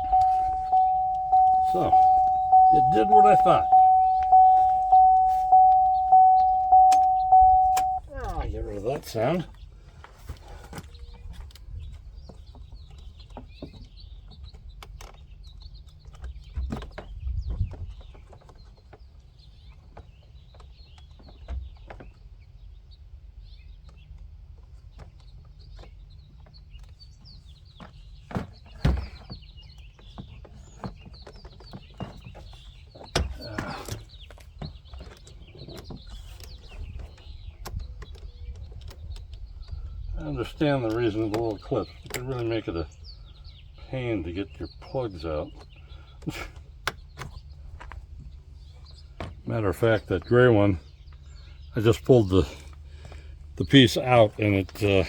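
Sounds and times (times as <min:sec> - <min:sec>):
low steady rumble: 0:00.0 - 0:08.7
birds chirping: 0:00.0 - 0:55.0.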